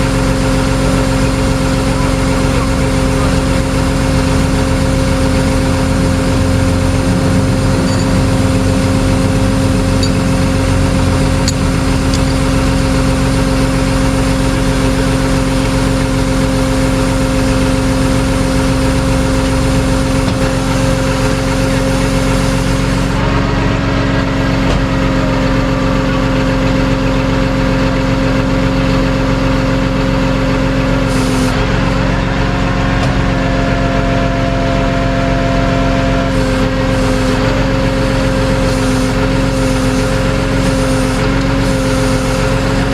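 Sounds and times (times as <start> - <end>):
vehicle engine droning: 0.0 - 42.9.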